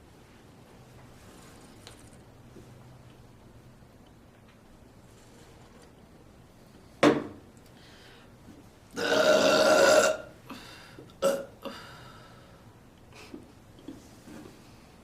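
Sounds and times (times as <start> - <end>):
person burping: 9.0 - 10.4, 11.2 - 11.8.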